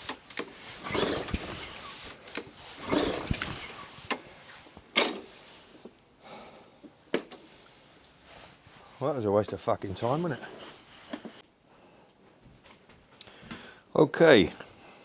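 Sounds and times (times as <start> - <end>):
pull-cord starter yanked: 0.1 - 4.2, 4.9 - 5.3
engine turning over: 0.1 - 4.3.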